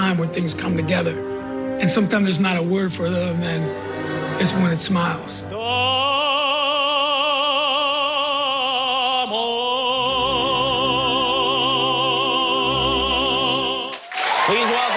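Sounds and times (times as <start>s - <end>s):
low orchestral accompaniment: 0.0s - 7.6s
operatic singing: 0.0s - 14.9s.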